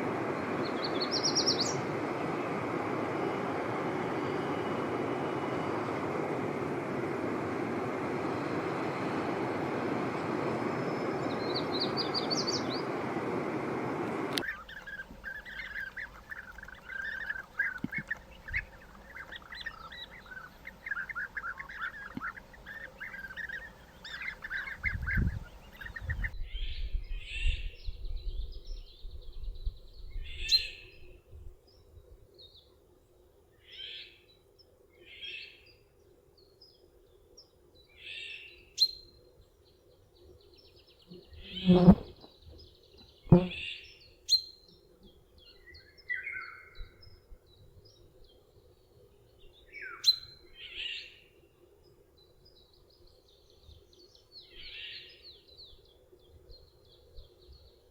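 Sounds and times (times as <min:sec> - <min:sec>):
birds twittering: 0:00.0 - 0:31.1, 0:40.5 - 0:44.5, 0:45.1 - 0:51.5
faint steady hum: 0:00.0 - 0:33.6
background noise: 0:00.0 - 0:57.9
single bird calls: 0:14.3 - 0:26.4
bird trill: 0:14.4 - 0:26.4.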